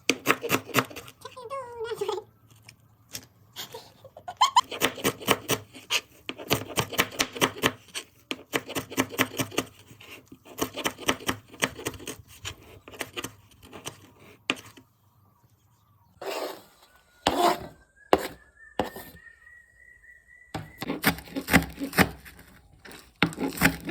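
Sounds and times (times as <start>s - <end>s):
knife chopping on cutting board: 6.3s - 9.7s, 17.2s - 19.1s, 20.6s - 22.4s, 23.2s - 23.9s.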